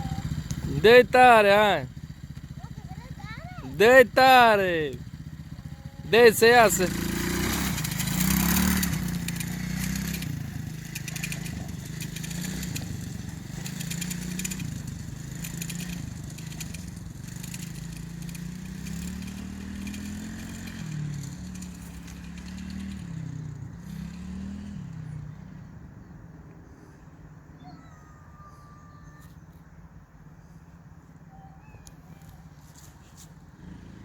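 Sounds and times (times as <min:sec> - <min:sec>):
atv engine revving: 0:00.0 - 0:25.6, 0:33.4 - 0:34.0.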